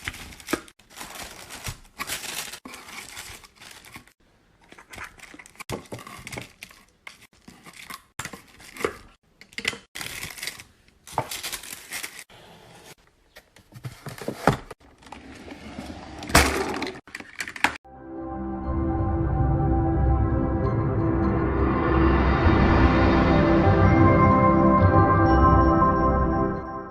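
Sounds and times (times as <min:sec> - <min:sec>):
plastic crinkling and tearing: 0:00.0 - 0:08.9, 0:10.0 - 0:12.3.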